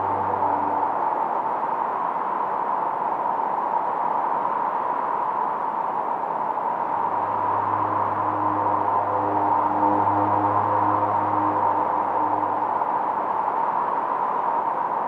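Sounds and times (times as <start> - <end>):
synthesizer noise hiss: 0.0 - 1.4.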